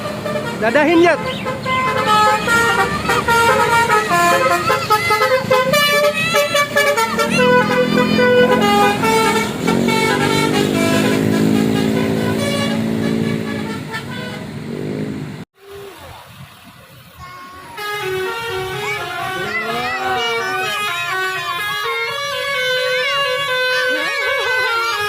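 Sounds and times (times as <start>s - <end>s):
multi-tone bus horn jingle: 0.0s - 14.8s, 17.3s - 25.0s.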